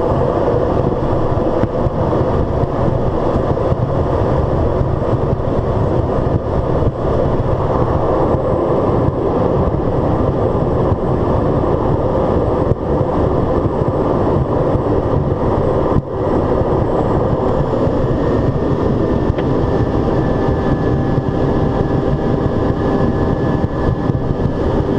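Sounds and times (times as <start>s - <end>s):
turboprop engine drone: 0.0s - 24.9s.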